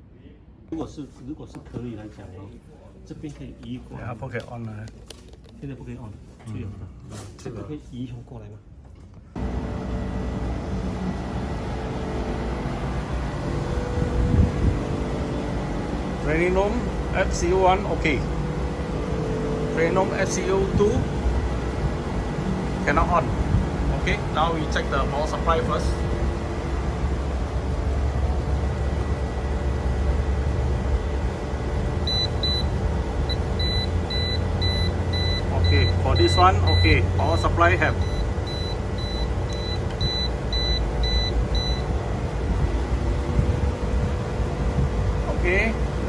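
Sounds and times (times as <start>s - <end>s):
low rumble: 9.4s - 31.9s
steady machine hum: 9.4s - 46.0s.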